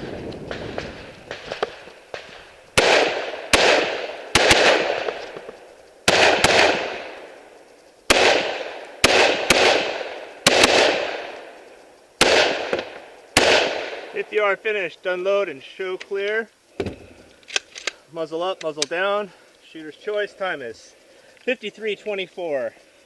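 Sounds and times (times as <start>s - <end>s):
rifle shots echoing: 0.0s - 7.4s, 8.1s - 11.6s, 12.2s - 14.5s.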